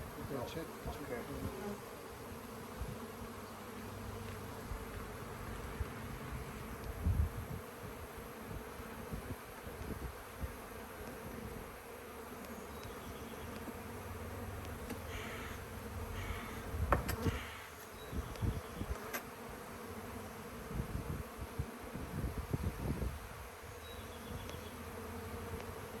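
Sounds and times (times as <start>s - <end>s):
honeybees buzzing: 0.0s - 26.0s
hive frames clicking and knocking: 12.4s - 13.8s, 14.6s - 15.1s, 16.9s - 19.3s.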